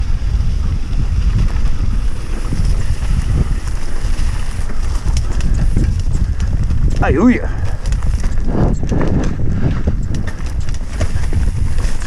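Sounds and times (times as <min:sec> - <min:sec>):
faint bike rattles and clicks: 0:00.0 - 0:12.0
wind buffeting microphone: 0:00.0 - 0:12.0.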